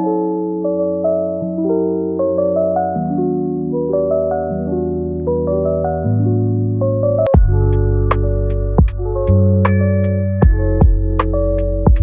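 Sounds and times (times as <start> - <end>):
soft keyboard tune: 0.0 - 12.0.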